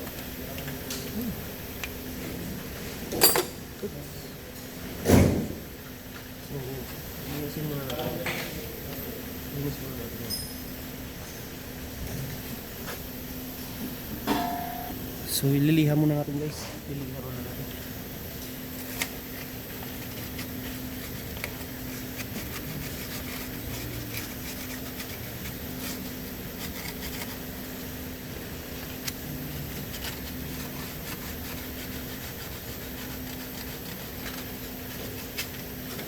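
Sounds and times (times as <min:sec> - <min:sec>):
sandpaper rubbing: 0:18.7 - 0:28.0, 0:28.7 - 0:36.0.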